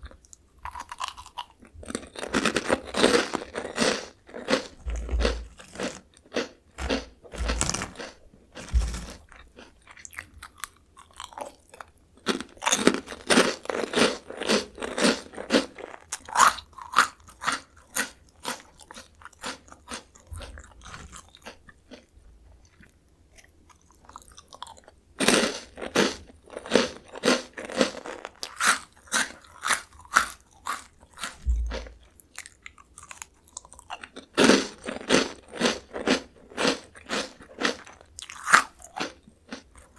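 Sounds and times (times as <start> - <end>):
crisps crunching and chewing: 0.0 - 39.9
dull thumps: 4.8 - 5.8, 8.6 - 9.2.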